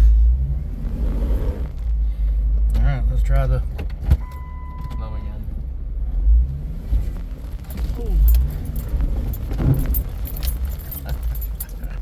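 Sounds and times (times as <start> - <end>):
vehicle engine rumble: 0.0 - 12.0
metallic rattling and jingling: 8.1 - 12.0.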